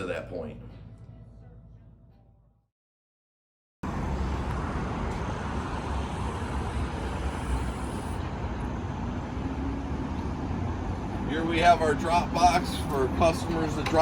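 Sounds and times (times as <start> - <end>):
road traffic rumble: 3.8 - 14.0.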